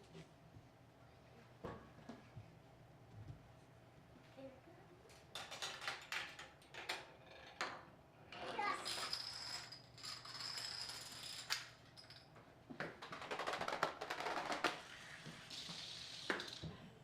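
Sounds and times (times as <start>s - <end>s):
small parts clicking and knocking: 5.1s - 7.9s, 8.8s - 16.7s
fast clattering run of clicks: 13.0s - 14.8s.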